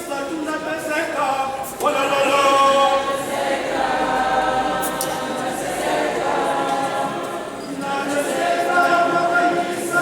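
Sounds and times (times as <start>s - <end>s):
voices singing a chant unaccompanied: 1.8s - 10.0s.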